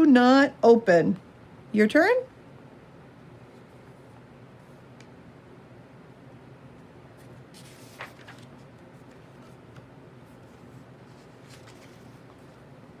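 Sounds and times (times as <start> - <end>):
steady low hum: 0.0 - 13.0
faint clicks and rustles: 7.2 - 12.7.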